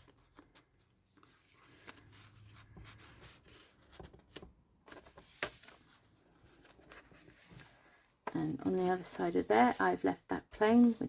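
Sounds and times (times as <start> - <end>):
paper rustling and sliding: 4.9 - 10.0, 10.6 - 11.0.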